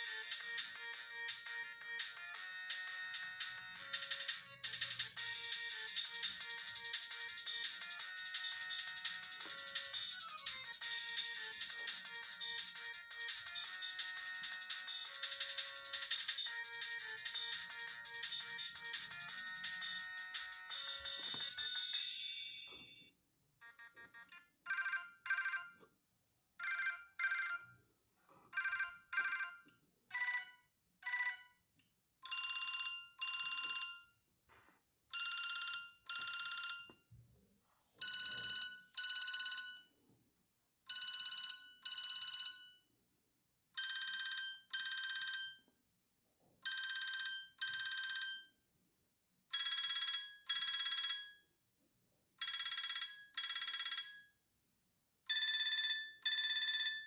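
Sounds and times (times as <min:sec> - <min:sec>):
phone ringtone double rings: 0:00.0 - 0:25.8, 0:26.6 - 0:27.7, 0:28.6 - 0:30.5, 0:32.3 - 0:34.0, 0:35.1 - 0:36.9, 0:38.0 - 0:39.8, 0:40.9 - 0:42.8, 0:43.8 - 0:45.6, 0:46.6 - 0:48.5, 0:49.5 - 0:51.4, 0:52.4 - 0:54.3, 0:55.3 - 0:57.0.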